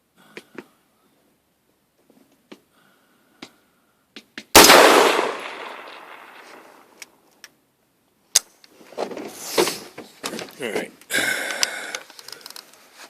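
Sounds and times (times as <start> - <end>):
rifle shot with echo: 4.5 - 7.0
sharp rifle click: 4.6 - 7.6.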